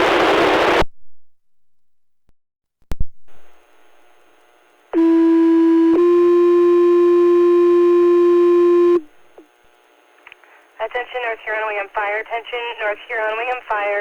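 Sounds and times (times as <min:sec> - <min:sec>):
radio channel hiss: 0:09.3 - 0:14.0
radio click: 0:10.1 - 0:14.0.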